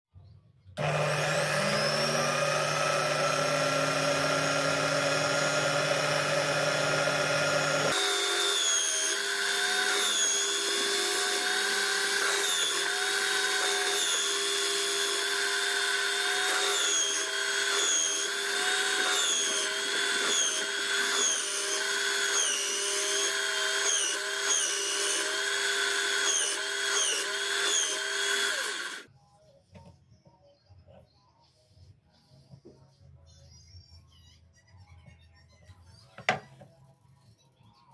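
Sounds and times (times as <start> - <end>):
electric drill whining: 0.8 - 29.1.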